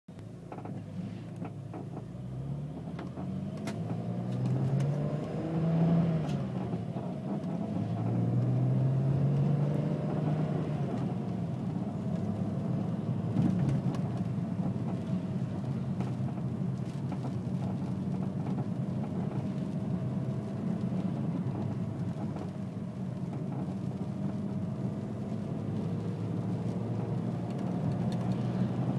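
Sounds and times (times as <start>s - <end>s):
car engine running: 0.1s - 28.9s
creaks and clicks: 0.2s - 2.1s, 2.8s - 5.4s.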